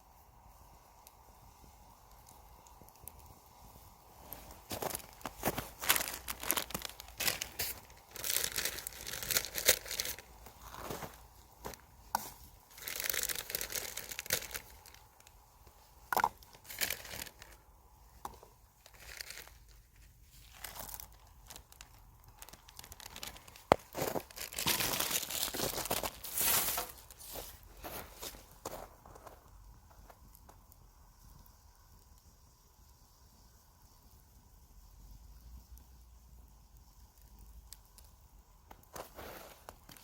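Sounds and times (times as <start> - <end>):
crinkling and tearing rustles: 4.2 - 17.6, 18.2 - 30.5, 38.7 - 40.0.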